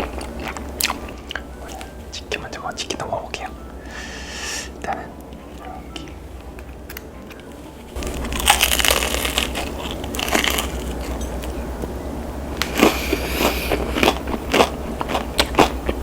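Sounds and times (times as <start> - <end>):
crispy fried chicken crunching: 0.0 - 2.0, 6.9 - 11.7, 12.6 - 16.0.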